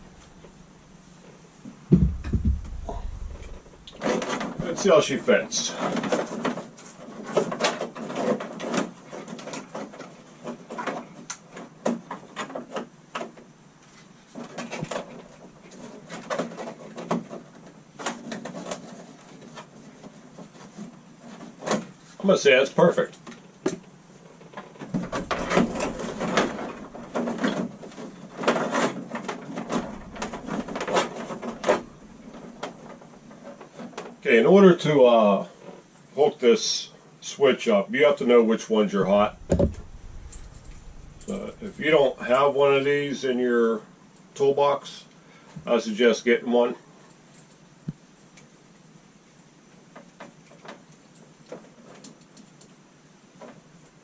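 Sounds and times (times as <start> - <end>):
light knocks: 1.9 - 3.8
scraping and rubbing: 1.9 - 4.8, 24.9 - 33.8, 39.0 - 42.4.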